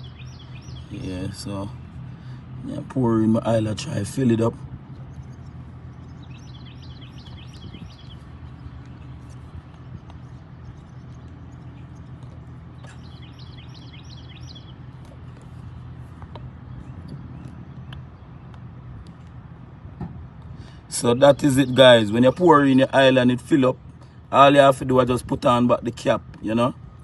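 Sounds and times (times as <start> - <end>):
songbird singing high notes: 0.0 - 1.8, 5.2 - 9.2, 12.7 - 14.9, 21.0 - 23.4
low engine hum: 0.0 - 27.0.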